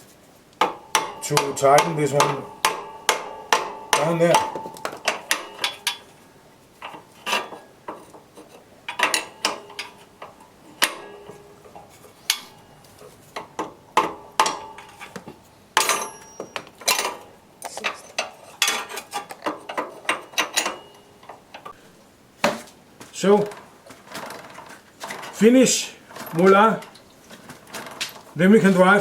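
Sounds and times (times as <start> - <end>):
hand tools knocking on metal: 0.6 - 6.1, 8.9 - 12.8, 13.4 - 17.3.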